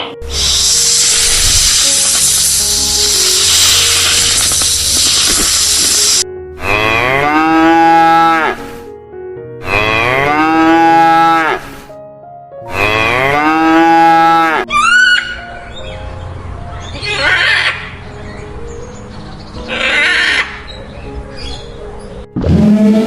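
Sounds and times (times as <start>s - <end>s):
cow mooing: 6.6s - 8.6s, 9.6s - 11.7s, 12.7s - 14.7s.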